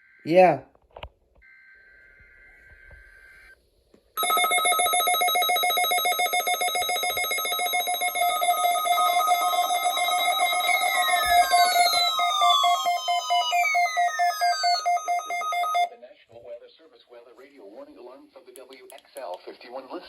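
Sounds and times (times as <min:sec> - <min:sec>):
pulsing electronic alarm tone: 0:04.2 - 0:15.9.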